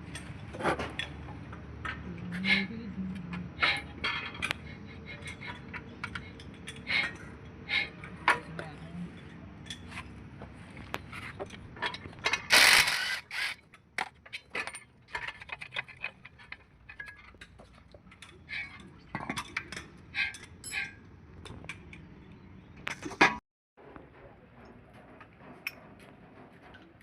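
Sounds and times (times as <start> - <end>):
metal clicks and knocks: 10.9 - 22.1
ratchet wrench clicking: 12.4 - 13.6.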